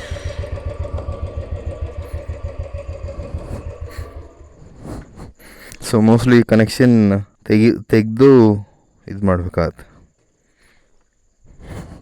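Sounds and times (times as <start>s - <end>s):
motorcycle engine idling: 0.0s - 4.8s.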